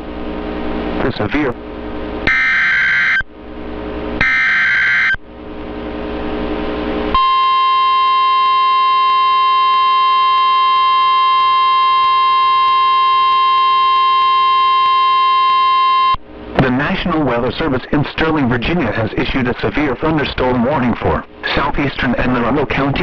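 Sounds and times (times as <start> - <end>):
loud steady warning alarm tone: 2.2 - 3.3, 4.2 - 5.2, 7.1 - 16.2
warbling electronic data screech: 2.3 - 3.2, 4.2 - 5.2
radio hiss: 16.5 - 23.0.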